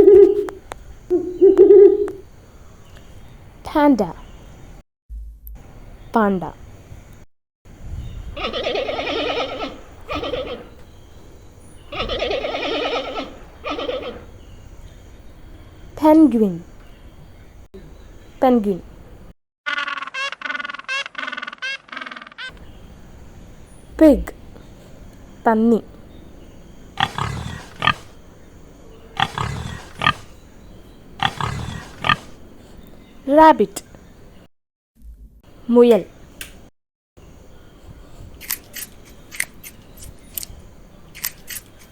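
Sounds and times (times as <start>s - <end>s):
pig sharp call: 8.4s - 10.8s, 11.9s - 14.3s, 19.7s - 22.5s, 27.0s - 28.2s, 29.2s - 30.4s, 31.2s - 32.4s
pig low grunts: 27.0s - 28.2s, 29.2s - 30.4s, 31.2s - 32.4s.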